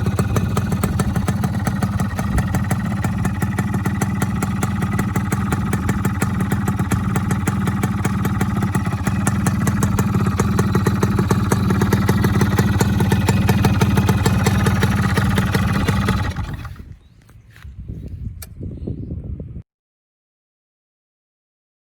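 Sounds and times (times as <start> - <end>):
two-stroke engine running: 0.0 - 17.0.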